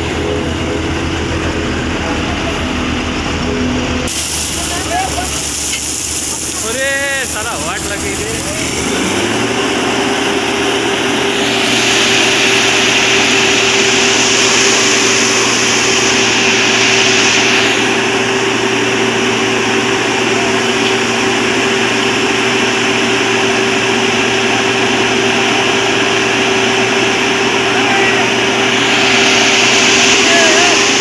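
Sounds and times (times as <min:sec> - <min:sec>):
diesel engine humming: 0:00.0 - 0:31.0
loud hiss: 0:04.1 - 0:09.5, 0:11.2 - 0:18.8, 0:28.2 - 0:31.0.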